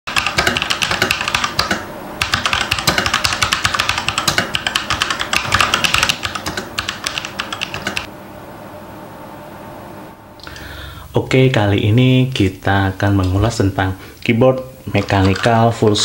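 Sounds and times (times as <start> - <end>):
fast mechanical keyboard typing: 0.1 - 8.1, 14.9 - 16.0.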